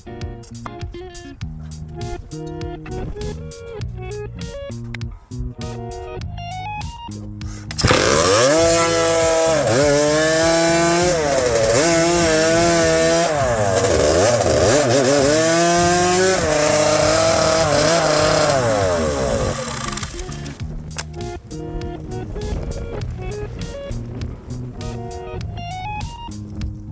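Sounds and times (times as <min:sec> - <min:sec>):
two-stroke chainsaw engine revving: 0:07.8 - 0:20.6.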